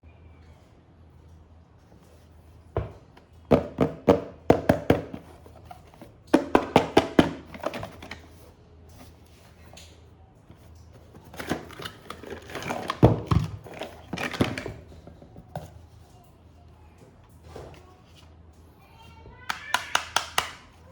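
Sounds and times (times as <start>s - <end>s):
toy packaging clicks and crinkling: 10.7s - 15.2s.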